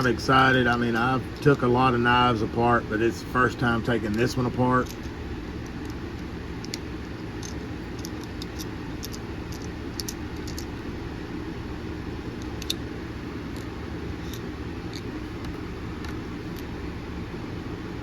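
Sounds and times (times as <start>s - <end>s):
low room hum: 0.0s - 18.0s
small metal tools clicking: 7.4s - 10.7s.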